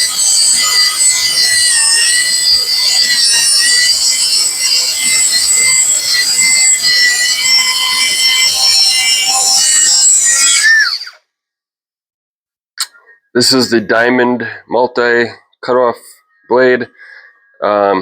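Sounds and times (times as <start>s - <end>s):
blade grating scrape on steel: 0.0s - 11.0s
cut-off tool high-pitched whine: 0.0s - 11.2s.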